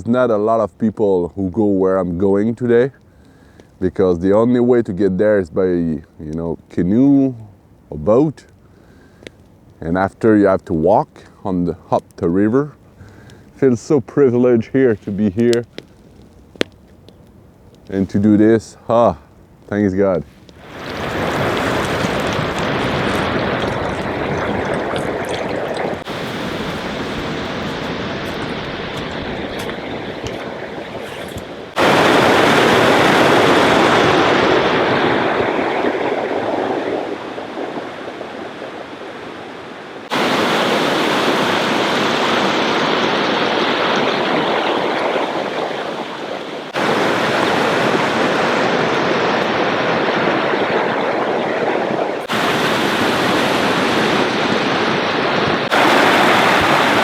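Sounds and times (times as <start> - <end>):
rushing river rapids: 20.6 - 35.6, 39.6 - 50.9, 52.2 - 57.0.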